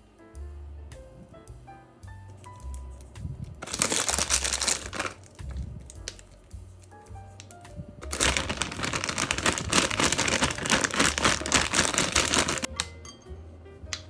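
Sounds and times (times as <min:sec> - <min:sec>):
dense crackling of fine rapid clicks: 0:02.4 - 0:12.7.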